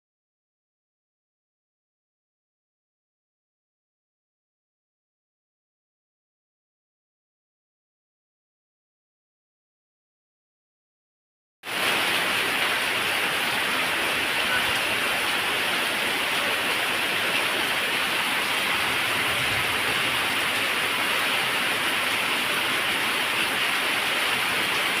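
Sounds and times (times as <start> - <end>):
heavy rain pouring: 11.7 - 25.0.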